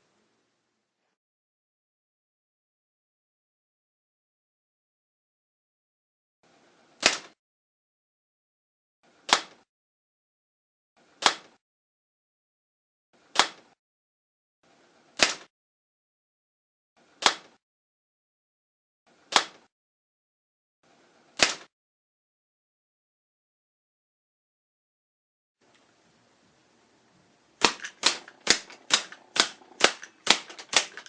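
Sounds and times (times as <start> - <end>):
rubber band gun snapping: 7.0 - 7.4, 9.3 - 9.6, 11.2 - 11.6, 13.3 - 13.7, 15.2 - 15.5, 17.2 - 17.6, 19.3 - 19.7, 21.4 - 21.7, 27.6 - 31.0.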